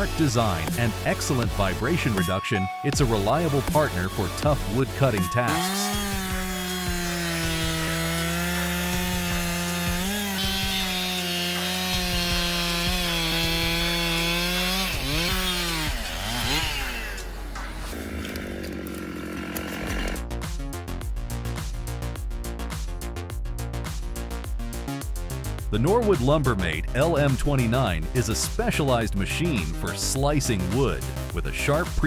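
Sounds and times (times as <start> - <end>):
chainsaw cutting wood: 3.2 - 20.7, 29.9 - 32.0.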